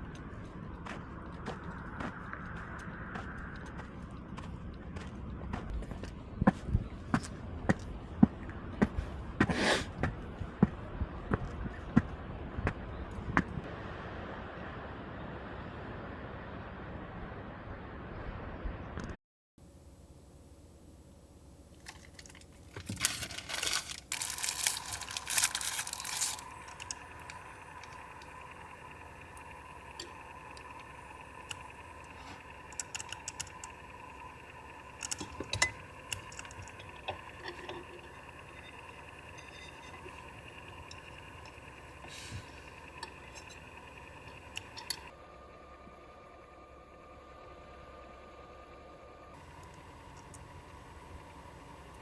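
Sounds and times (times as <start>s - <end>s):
faint steady hum: 0.0s - 52.0s
crinkling and rustling: 21.7s - 30.9s.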